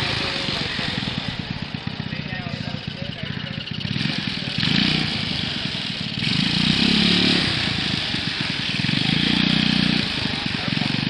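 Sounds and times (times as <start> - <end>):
skid steer engine under load: 0.0 - 11.0.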